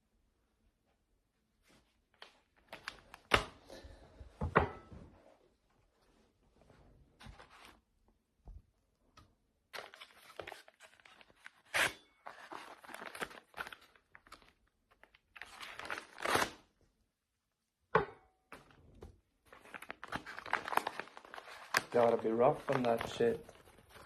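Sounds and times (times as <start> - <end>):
packaging ripping and crinkling: 9.8 - 16.7, 19.5 - 24.0.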